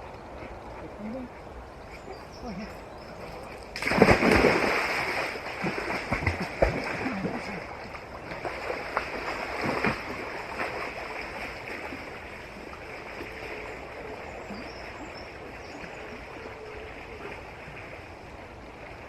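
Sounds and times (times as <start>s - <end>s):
river water running: 0.0s - 19.0s
small water splashes: 3.0s - 19.0s.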